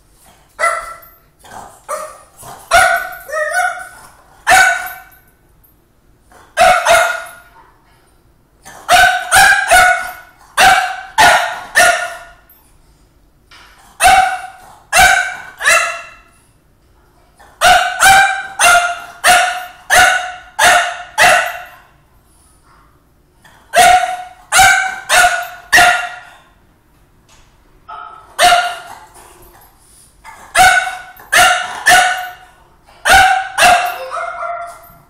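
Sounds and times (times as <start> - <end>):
dog barking loudly: 0.6 - 1.1, 1.9 - 5.2, 6.5 - 7.5, 8.7 - 12.4, 14.0 - 16.3, 17.6 - 21.8, 23.7 - 26.3, 27.9 - 29.1, 30.3 - 34.8.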